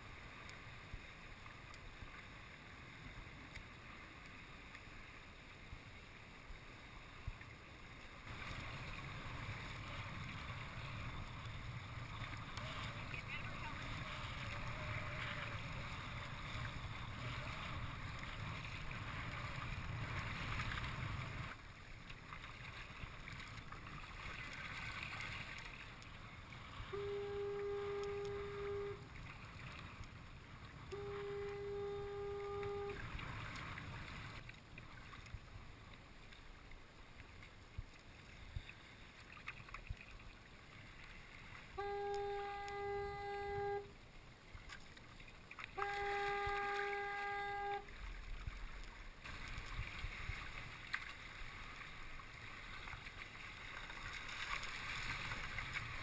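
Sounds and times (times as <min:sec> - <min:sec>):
horn blasts: 0:26.8 - 0:29.1, 0:30.9 - 0:33.2, 0:41.8 - 0:43.9, 0:45.8 - 0:47.9.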